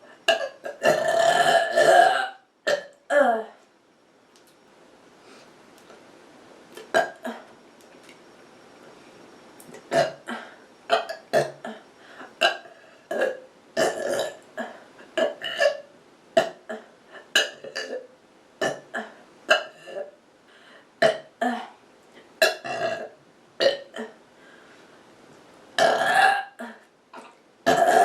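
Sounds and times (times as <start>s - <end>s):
person burping: 0.3s - 3.5s, 6.8s - 7.5s, 9.9s - 11.8s, 12.4s - 15.8s, 16.4s - 18.0s, 18.6s - 20.1s, 21.0s - 21.8s, 22.4s - 24.2s, 25.8s - 28.0s.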